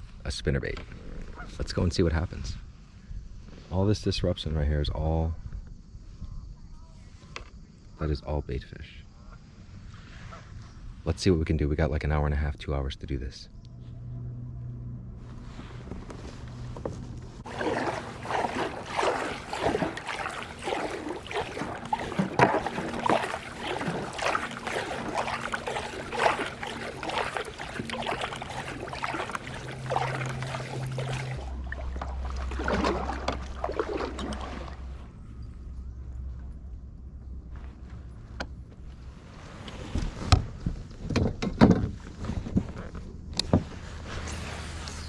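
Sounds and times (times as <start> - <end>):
steady low hum: 13.4 - 39.4
water splashing and sloshing: 15.2 - 36.7.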